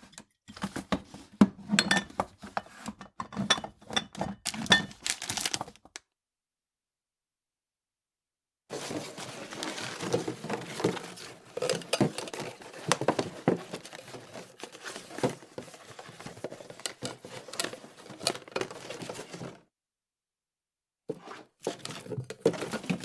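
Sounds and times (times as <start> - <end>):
small items clattering in drawer: 0.5 - 6.0, 8.7 - 19.6, 21.1 - 23.0.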